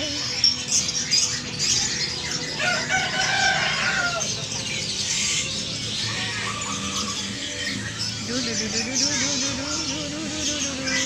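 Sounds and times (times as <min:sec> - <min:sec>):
small birds chirping: 0:00.0 - 0:11.0
rooster crowing: 0:02.6 - 0:04.4.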